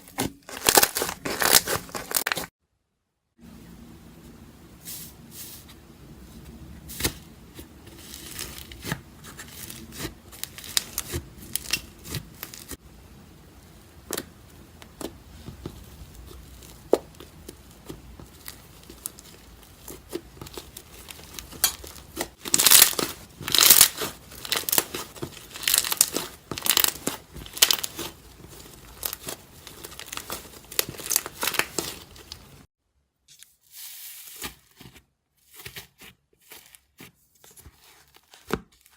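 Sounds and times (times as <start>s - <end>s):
slime crust crackling: 0.0s - 2.5s, 6.9s - 12.8s, 13.6s - 32.7s.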